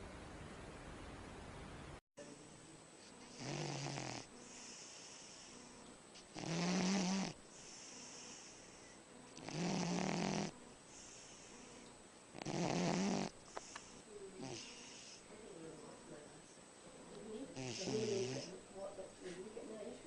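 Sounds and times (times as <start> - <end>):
animal snoring: 3.2 - 15.3, 17.5 - 18.6
soft breaths: 4.2 - 6.4, 7.3 - 9.4, 10.8 - 12.1, 13.3 - 20.0.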